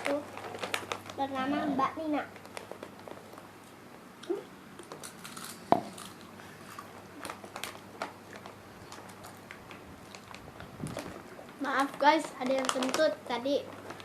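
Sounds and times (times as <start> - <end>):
chips crunching while chewed: 4.8 - 13.0.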